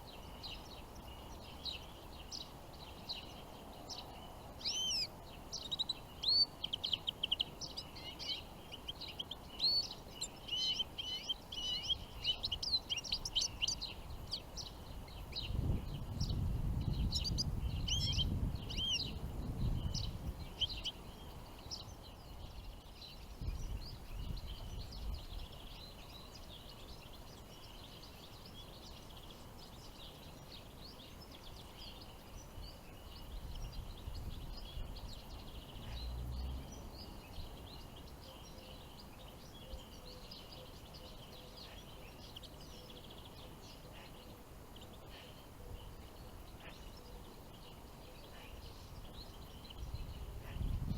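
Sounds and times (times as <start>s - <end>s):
songbirds chirping: 0.0s - 50.9s.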